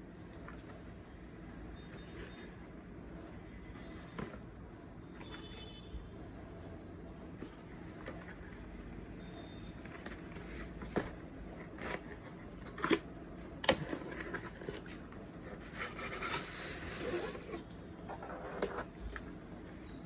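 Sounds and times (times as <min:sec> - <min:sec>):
scraping and rustling: 0:13.7 - 0:19.8.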